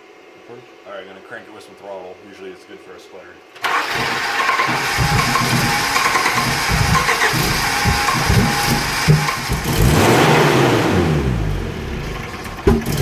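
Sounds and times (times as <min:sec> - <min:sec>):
car engine cranking and sputtering: 0:03.6 - 0:13.0
engine revving: 0:03.6 - 0:13.0.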